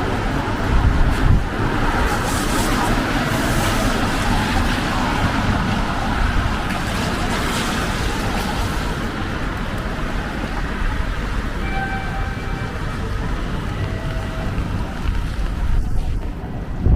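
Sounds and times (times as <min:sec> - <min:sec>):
cars passing on wet road: 0:00.0 - 0:16.9.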